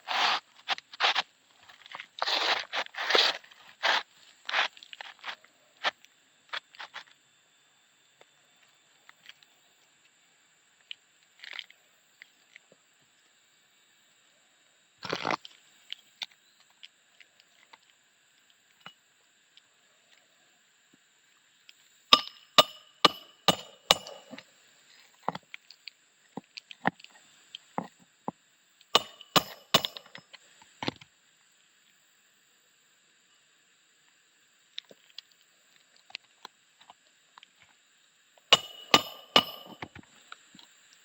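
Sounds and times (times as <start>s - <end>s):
shingles clicking and knocking: 29.0s - 30.2s, 38.6s - 40.0s.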